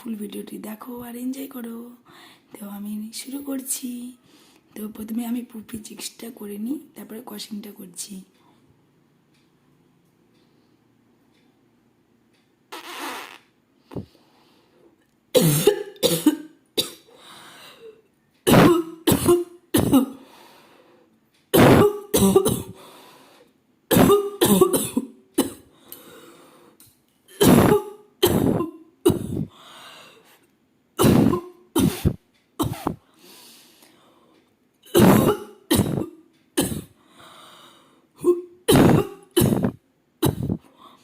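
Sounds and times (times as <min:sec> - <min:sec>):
woman coughing: 0:15.4 - 0:17.1, 0:18.5 - 0:20.2, 0:21.6 - 0:22.8, 0:23.9 - 0:25.7, 0:27.3 - 0:29.5, 0:31.0 - 0:33.0, 0:34.9 - 0:37.0, 0:38.2 - 0:40.7.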